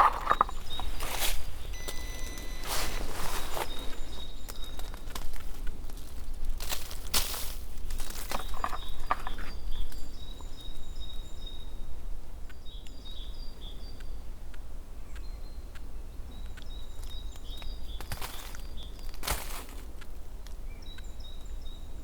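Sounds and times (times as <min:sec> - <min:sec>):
rustling footsteps: 0:00.0 - 0:10.7, 0:16.9 - 0:20.2
songbird singing: 0:00.0 - 0:22.0.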